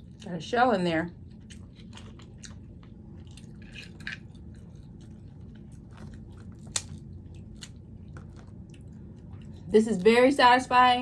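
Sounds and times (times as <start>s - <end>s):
person chewing food: 1.2s - 9.7s.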